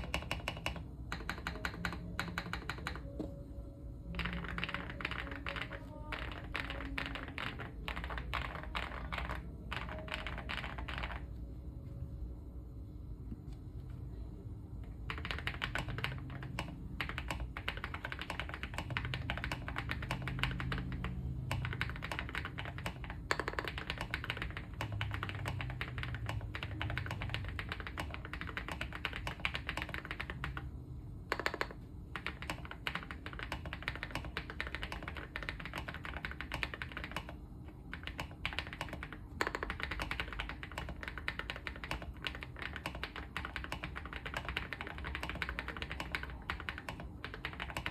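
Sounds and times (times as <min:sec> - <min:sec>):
mechanical keyboard typing: 0:00.0 - 0:03.3, 0:04.1 - 0:11.3, 0:15.0 - 0:30.7, 0:31.3 - 0:47.9.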